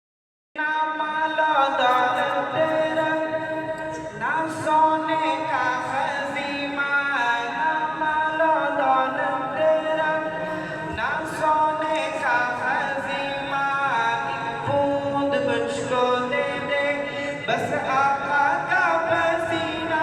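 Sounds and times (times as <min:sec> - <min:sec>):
unaccompanied voices singing: 0:01.6 - 0:06.6.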